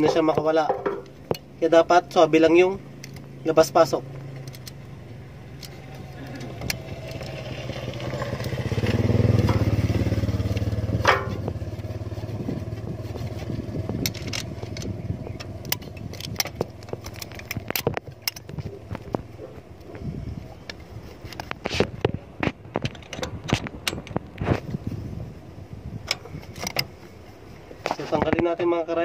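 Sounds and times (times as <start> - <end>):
motorcycle engine running: 0.0 - 22.4
metallic clicks of hand tools: 4.4 - 4.8, 14.0 - 18.6.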